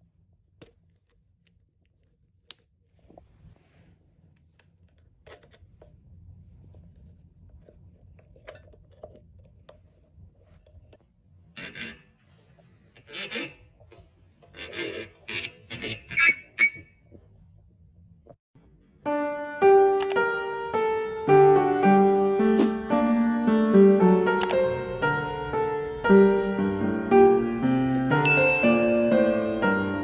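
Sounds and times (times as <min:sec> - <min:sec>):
hand tool scraping: 0:11.5 - 0:16.9.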